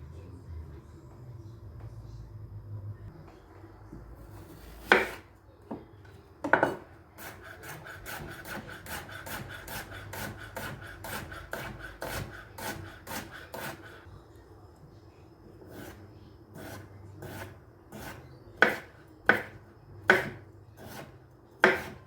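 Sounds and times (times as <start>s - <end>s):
knife scraping vegetables: 4.2s - 5.3s, 7.2s - 14.0s, 15.6s - 22.0s.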